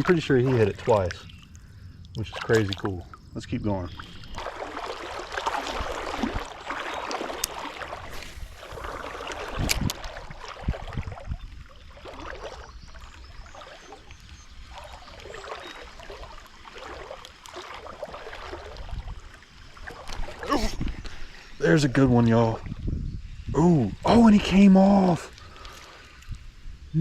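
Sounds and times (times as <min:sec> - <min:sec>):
creek water splashing: 0:00.0 - 0:22.8, 0:24.2 - 0:26.5.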